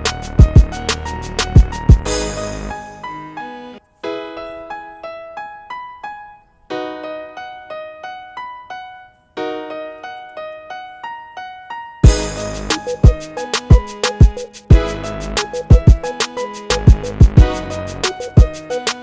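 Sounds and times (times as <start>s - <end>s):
electric piano melody: 0.0s - 19.0s
drum beat: 0.4s - 2.1s, 12.0s - 19.0s.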